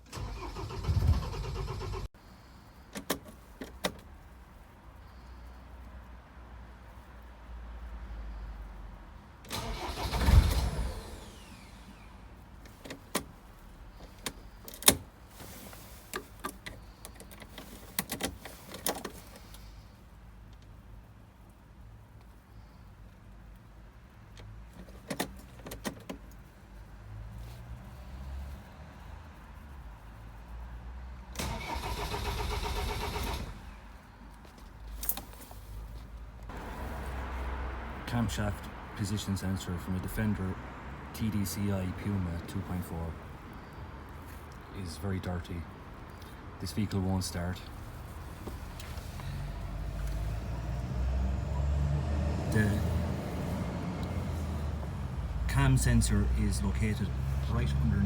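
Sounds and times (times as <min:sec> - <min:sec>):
diesel engine cranking on starter: 0:00.0 - 0:02.2, 0:09.5 - 0:12.2, 0:31.4 - 0:34.0, 0:48.8 - 0:58.0.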